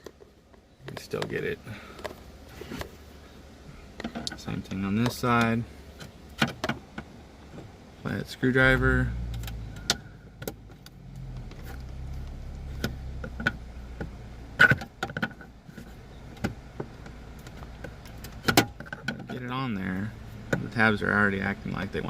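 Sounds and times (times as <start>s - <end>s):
low steady hum: 0.0s - 22.0s.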